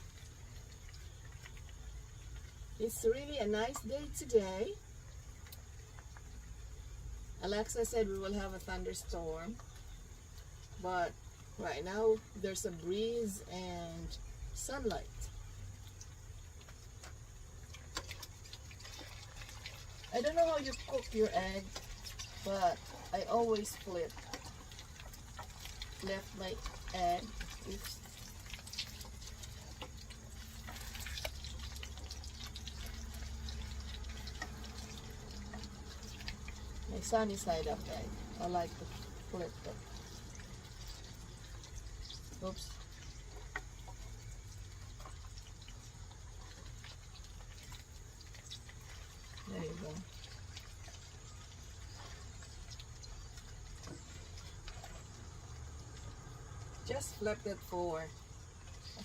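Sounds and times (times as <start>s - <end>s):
oil popping and crackling: 0.0s - 12.4s, 13.3s - 59.0s
egg sizzling in hot oil: 16.0s - 49.4s.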